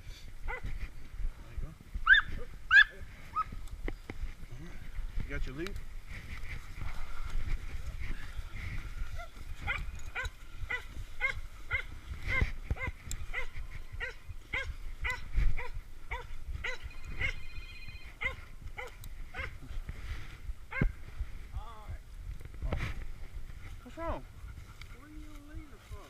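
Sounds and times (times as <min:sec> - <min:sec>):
dog barking: 0:02.1 - 0:03.5, 0:09.6 - 0:11.9, 0:12.8 - 0:17.4, 0:18.2 - 0:19.6.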